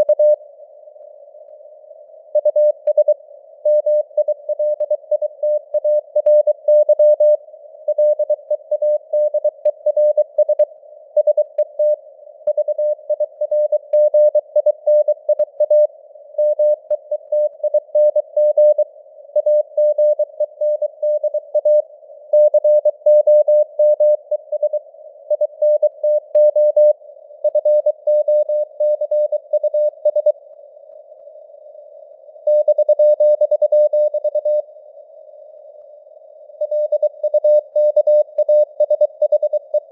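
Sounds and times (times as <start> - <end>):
morse code tone: 36.6 - 39.9.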